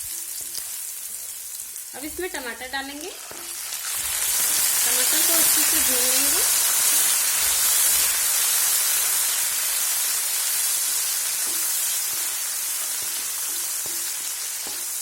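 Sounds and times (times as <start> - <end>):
tomatoes sizzling in oil: 0.0 - 15.0
spoon knocking against pan: 11.4 - 12.4, 13.0 - 15.0.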